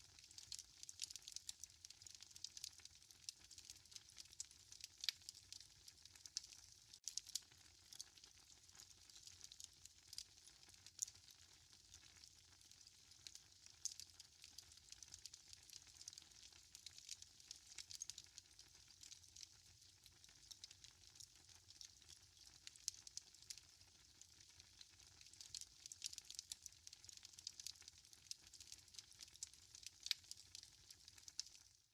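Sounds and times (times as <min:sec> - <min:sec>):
wood fire crackling: 0:00.3 - 0:01.6, 0:06.3 - 0:09.2, 0:16.8 - 0:18.2, 0:20.4 - 0:20.7, 0:24.6 - 0:26.6, 0:27.2 - 0:31.5.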